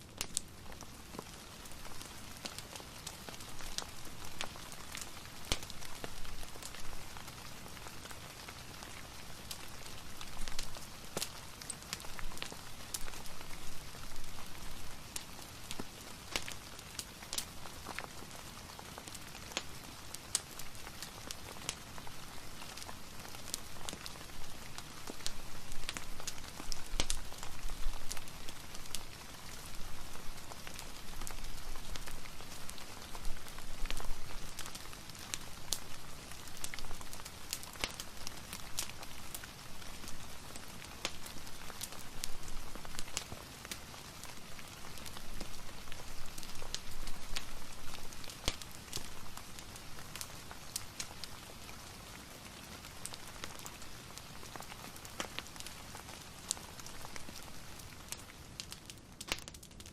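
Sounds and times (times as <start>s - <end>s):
fireplace crackling and popping: 0.0s - 59.9s
steady rain: 0.0s - 59.9s.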